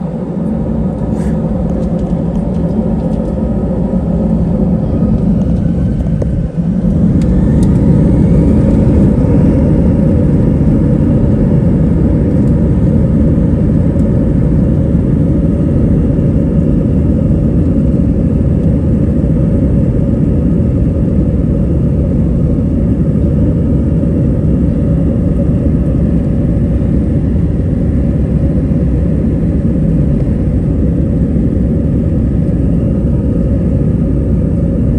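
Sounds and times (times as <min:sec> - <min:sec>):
jet engine whine and rumble: 0:00.0 - 0:34.9.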